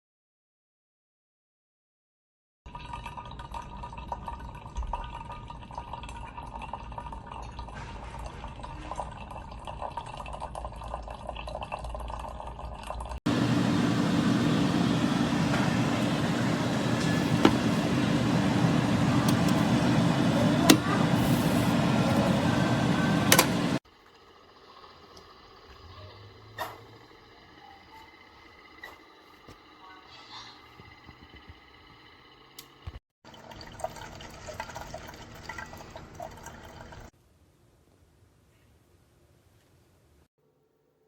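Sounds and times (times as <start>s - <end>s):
coffee pouring into a cup: 2.7s - 7.8s, 8.5s - 25.8s, 33.3s - 37.1s.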